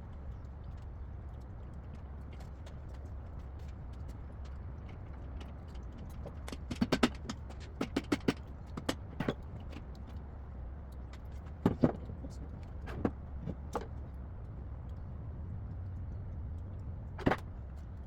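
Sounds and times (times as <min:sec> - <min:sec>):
hand tools clicking and knocking: 0:06.2 - 0:09.4.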